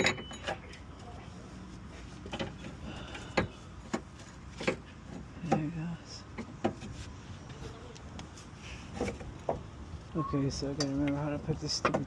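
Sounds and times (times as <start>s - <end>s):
hand tools clinking on metal: 0.0s - 0.9s.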